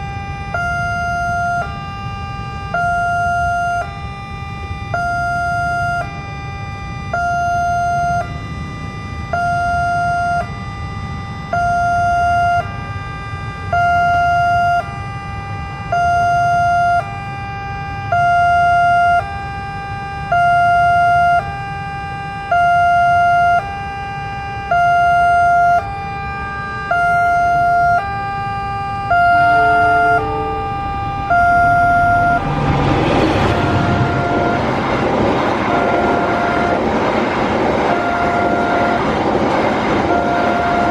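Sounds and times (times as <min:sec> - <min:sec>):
level crossing two-tone siren: 0:00.0 - 0:40.9
lower tones: 0:26.3 - 0:39.1.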